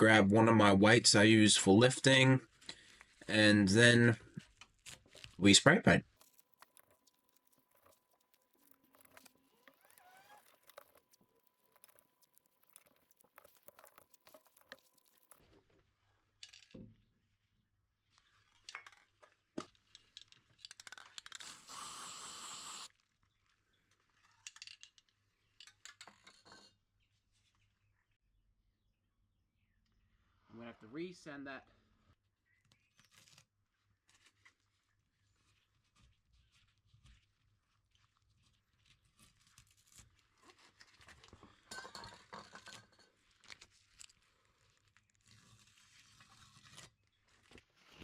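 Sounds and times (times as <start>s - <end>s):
spray paint can hissing: 21.4s - 22.9s.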